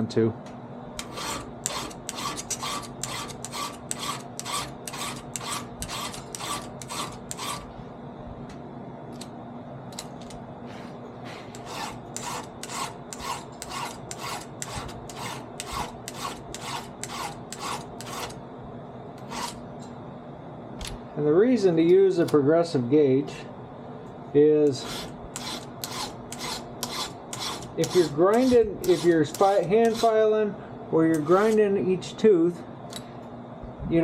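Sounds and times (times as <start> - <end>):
file rasping on chainsaw chain: 1.0 - 7.7, 11.5 - 18.4, 19.2 - 19.6, 24.8 - 30.2.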